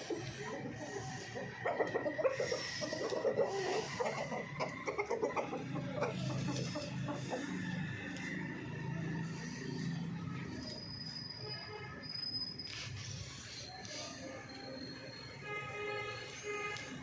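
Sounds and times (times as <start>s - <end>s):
chickens clucking: 0.0s - 8.6s.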